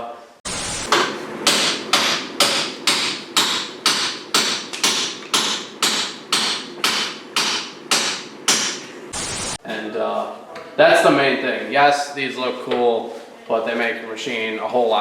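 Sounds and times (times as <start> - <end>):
hammering: 0.5 - 9.6.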